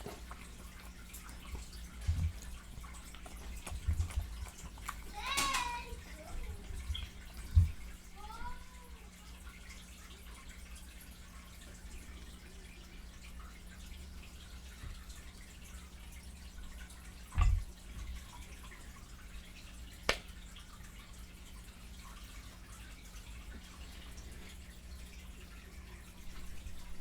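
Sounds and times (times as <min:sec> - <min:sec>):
chewing and lip-smacking: 0:00.0 - 0:08.0.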